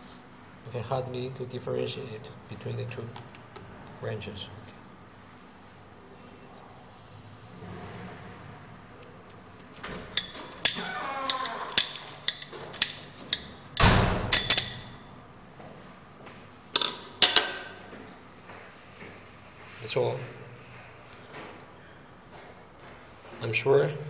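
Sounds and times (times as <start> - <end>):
metal wrenches clinking: 10.1 - 15.1.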